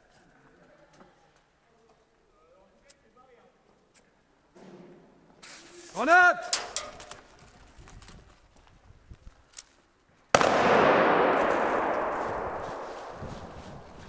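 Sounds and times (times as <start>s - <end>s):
grenade bang: 10.4s - 14.0s.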